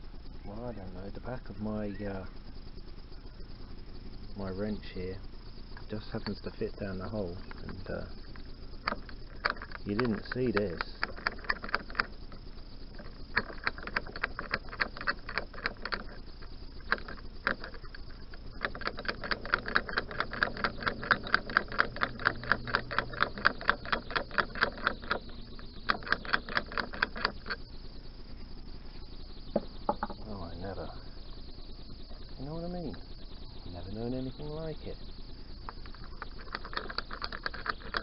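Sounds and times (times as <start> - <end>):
rapid sharp metal clicks: 5.7 - 27.8, 32.8 - 38.0.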